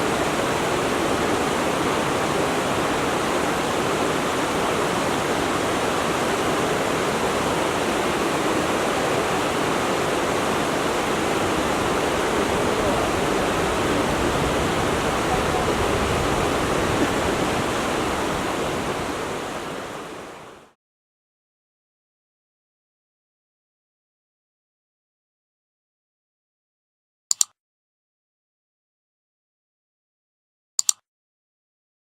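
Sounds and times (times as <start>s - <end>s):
stream of water flowing: 0.0s - 20.8s.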